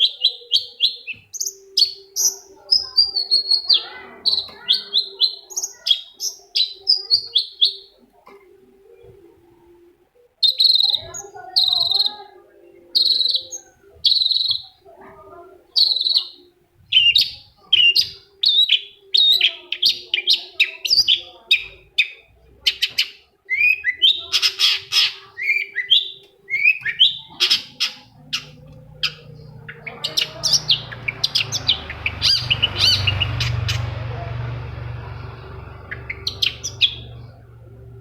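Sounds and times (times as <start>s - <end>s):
bird singing sharp chirps: 23.6s - 34.2s
low rumble: 28.6s - 38.0s.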